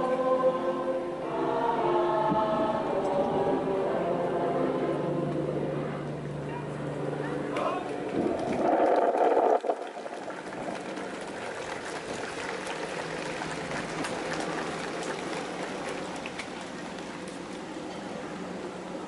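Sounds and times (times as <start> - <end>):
crowd applauding: 7.9 - 15.6.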